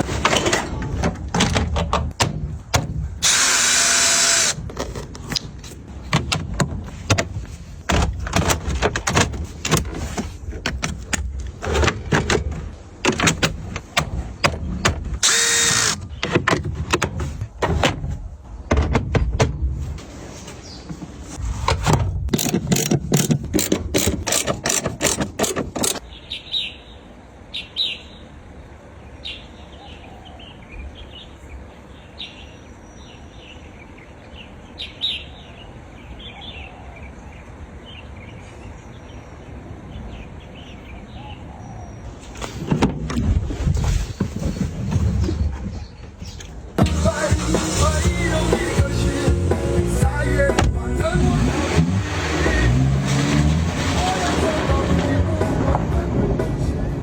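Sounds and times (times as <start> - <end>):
sharp mechanical clicks and knocks: 21.7 - 26.0
birds chirping: 25.9 - 42.4.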